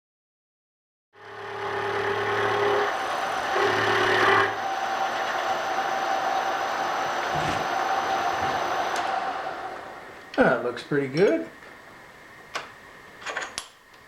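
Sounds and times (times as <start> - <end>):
milling machine whine: 1.2 - 10.4.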